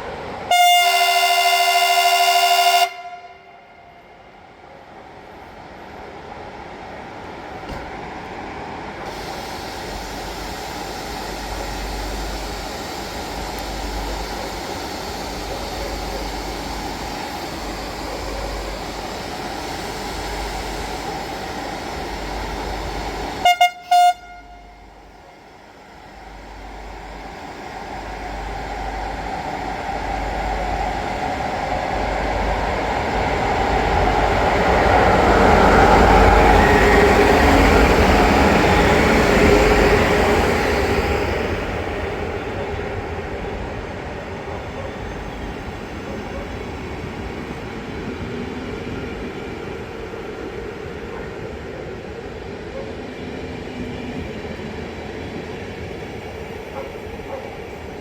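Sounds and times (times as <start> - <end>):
train running noise: 0.0 - 58.0
train horn blasts: 0.5 - 4.3, 23.4 - 25.1.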